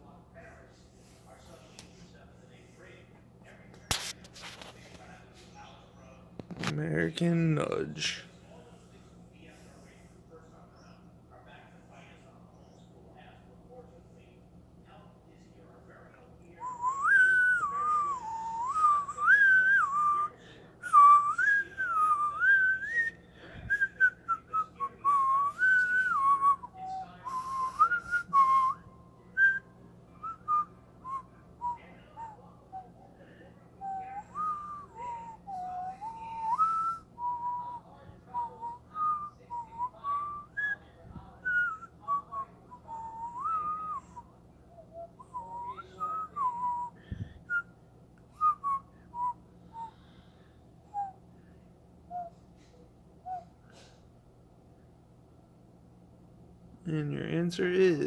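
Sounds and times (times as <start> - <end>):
person whistling a tune: 16.6 - 28.8, 33.8 - 37.8, 41.5 - 44.2, 44.8 - 47.7, 48.4 - 50.2.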